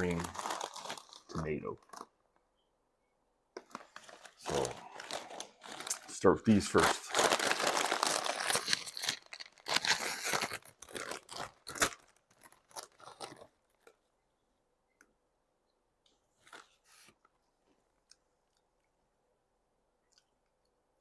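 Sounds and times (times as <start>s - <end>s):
potato chips being crunched: 0.0s - 2.0s, 4.4s - 13.4s
chip bag rustling and crackling: 0.0s - 2.1s, 3.6s - 13.9s.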